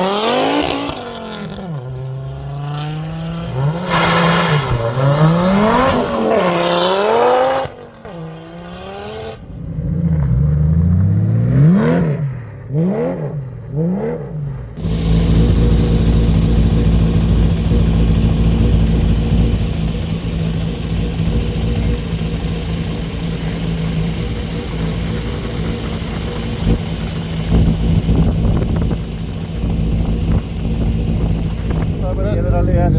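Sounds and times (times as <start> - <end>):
rally car engine revving: 0.0 - 32.9
steady engine drone: 14.5 - 32.9.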